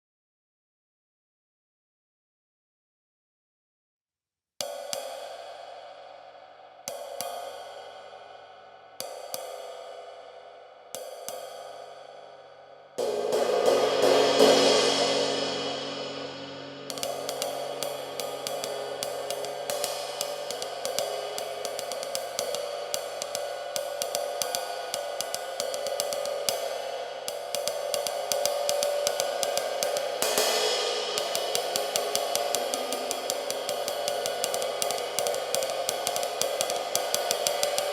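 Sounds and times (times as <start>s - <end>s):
ride cymbal struck with a stick: 4.6s - 37.9s
fast cymbal ride pattern: 11.0s - 37.9s
loud crashing cymbal hit: 13.0s - 25.0s, 26.2s - 37.9s.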